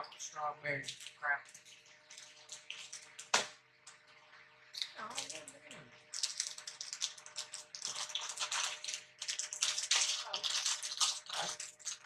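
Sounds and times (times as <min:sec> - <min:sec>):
plastic wrappers crinkling: 0:06.1 - 0:12.0.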